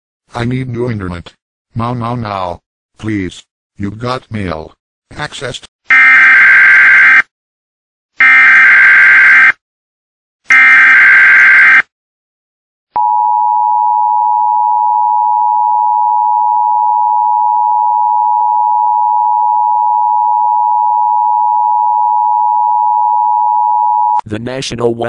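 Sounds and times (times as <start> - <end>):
data burst tones: 10.5 - 11.8.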